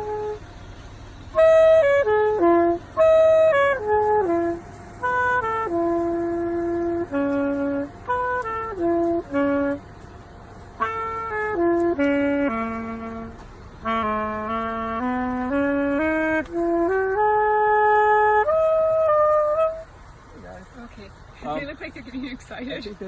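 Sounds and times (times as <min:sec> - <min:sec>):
solo woodwind melody: 0:00.0 - 0:20.0.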